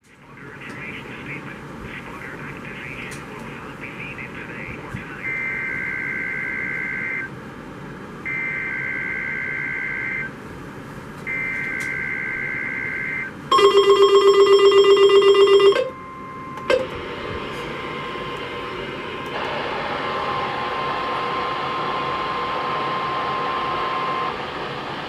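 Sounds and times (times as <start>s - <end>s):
pulsing buzzy electronic beep: 21.2s - 24.4s.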